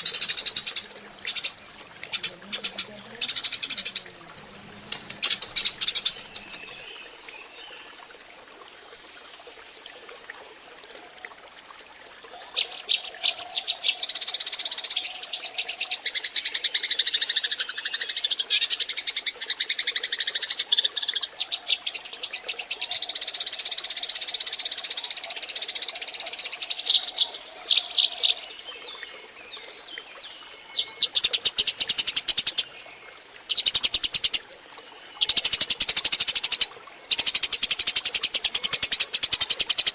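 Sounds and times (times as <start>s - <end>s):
sparrows chirping: 0.0s - 7.1s, 30.3s - 32.7s, 33.5s - 34.4s, 35.2s - 39.9s.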